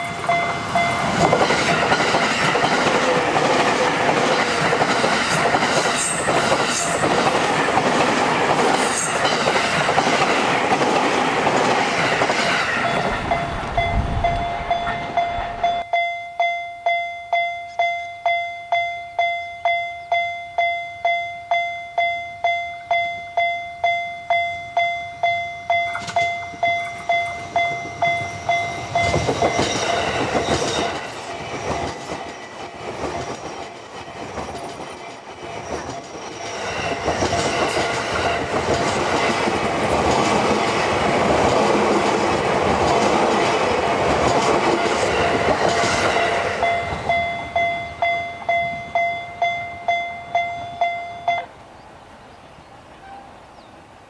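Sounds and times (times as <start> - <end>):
train rumble and wheel clatter: 0.0 - 15.9, 25.2 - 51.9
crossing warning bell ringing: 0.0 - 32.7, 36.4 - 51.6.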